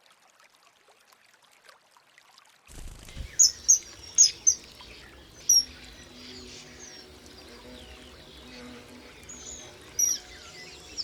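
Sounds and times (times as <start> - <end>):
faint outdoor background: 0.1 - 11.0
kingfisher shrill calls: 3.3 - 4.7.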